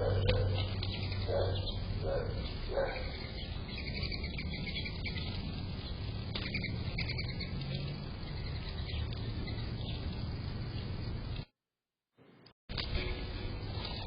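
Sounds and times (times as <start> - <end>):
dog barking: 0.0 - 0.7, 1.3 - 3.1
small birds chirping: 0.0 - 11.4.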